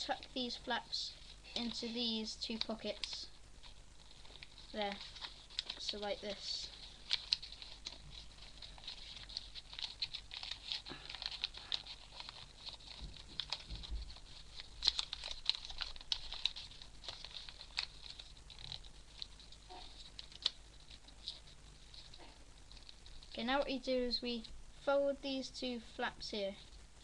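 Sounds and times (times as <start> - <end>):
paper rustling and crinkling: 0.0 - 24.6.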